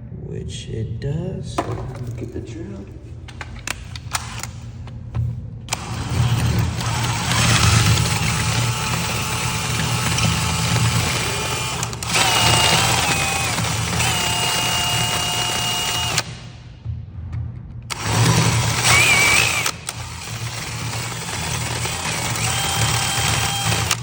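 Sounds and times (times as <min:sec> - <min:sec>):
cordless drill motor whine: 0:05.7 - 0:16.3, 0:17.9 - 0:24.0.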